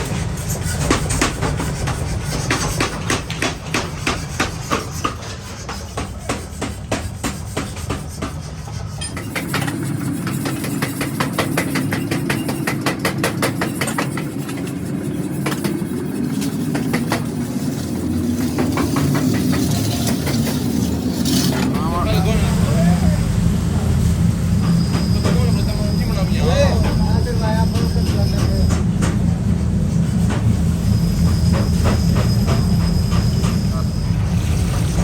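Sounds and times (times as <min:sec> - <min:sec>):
low machine hum: 0:14.3 - 0:35.0.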